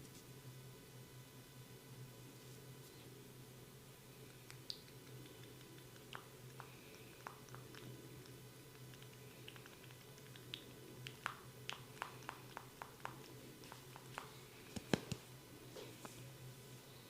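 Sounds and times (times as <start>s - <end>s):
steady low hum: 0.0s - 17.0s
clicks and skin smacks: 4.3s - 15.2s.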